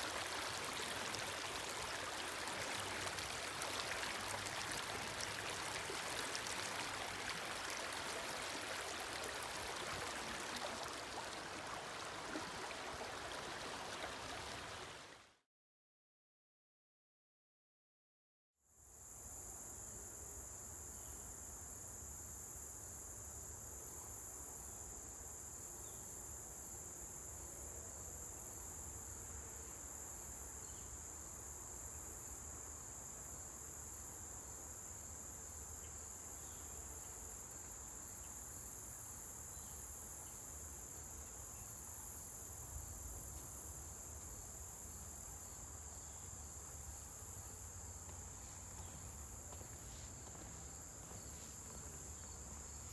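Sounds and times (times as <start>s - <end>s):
high-pitched insect chorus: 19.0s - 52.9s.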